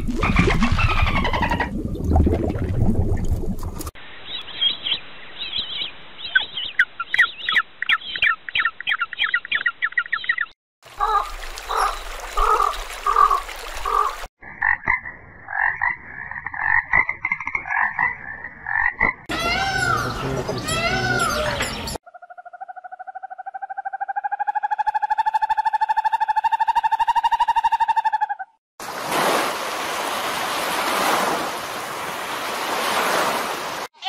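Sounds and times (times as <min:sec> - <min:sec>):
frogs croaking and trilling: 0:04.2 - 0:28.6.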